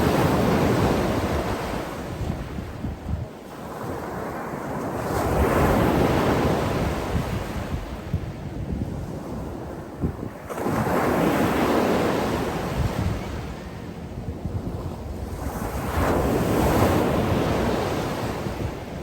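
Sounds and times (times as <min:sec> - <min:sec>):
wind on microphone: 0:00.0 - 0:19.0
sea waves breaking on shore: 0:08.9 - 0:13.8, 0:14.5 - 0:19.0.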